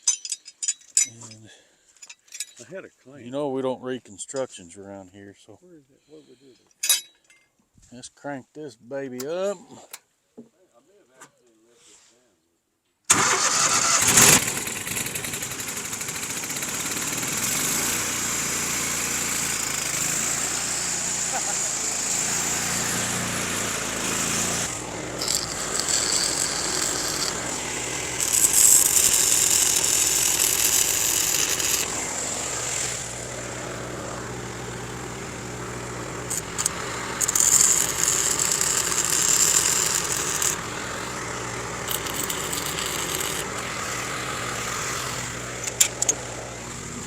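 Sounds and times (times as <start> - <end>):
welder engine running: 13.1 - 47.0
welding arc crackling and hissing: 25.2 - 33.1.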